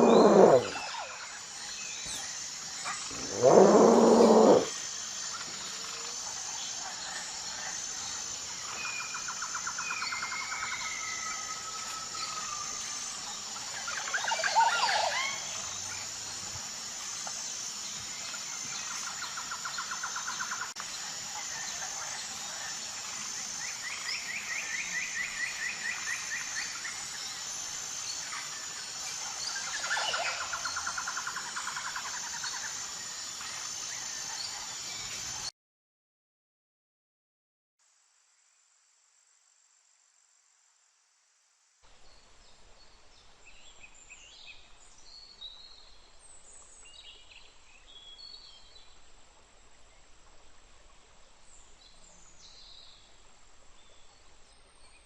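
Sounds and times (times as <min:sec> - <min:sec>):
birds calling and trilling: 0:00.0 - 0:04.8
high insect drone: 0:00.0 - 0:35.5.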